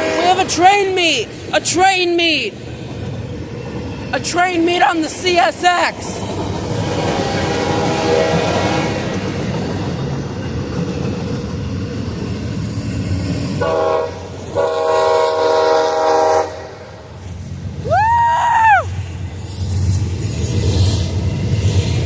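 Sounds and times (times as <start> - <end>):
locomotive air horn: 0.0 - 0.5, 6.9 - 9.2, 13.6 - 16.8
rumble of rolling freight cars: 0.0 - 22.0.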